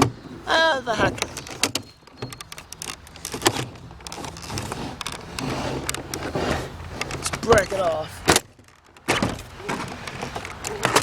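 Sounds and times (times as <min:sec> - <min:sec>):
plastic parts clicking and knocking: 0:01.1 - 0:06.2, 0:07.0 - 0:11.0.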